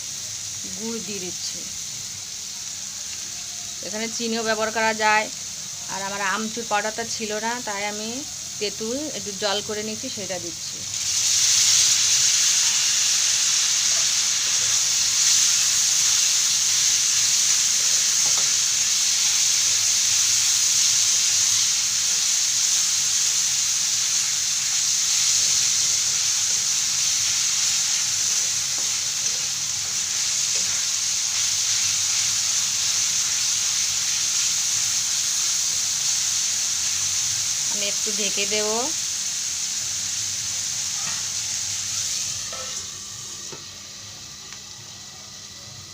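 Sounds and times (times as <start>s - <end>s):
food sizzling in hot oil: 0.0s - 45.9s.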